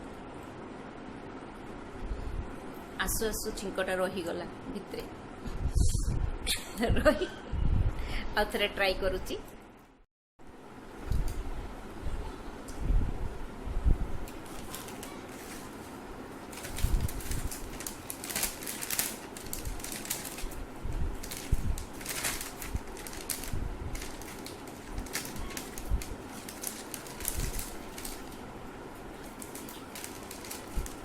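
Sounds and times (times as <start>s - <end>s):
rustling close to microphone: 14.2s - 31.0s.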